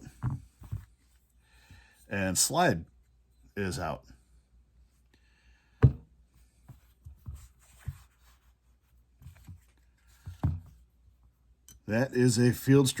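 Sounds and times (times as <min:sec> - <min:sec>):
pistol parts knocking on work surface: 0:05.8 - 0:06.1.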